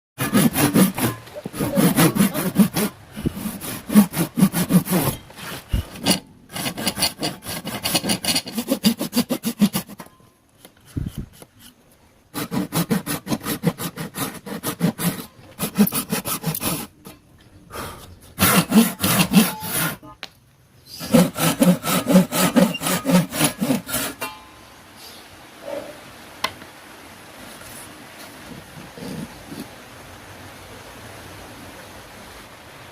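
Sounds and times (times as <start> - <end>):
hand saw cutting wood: 0.2 - 17.2, 17.8 - 20.2, 21.0 - 24.4, 28.5 - 29.7.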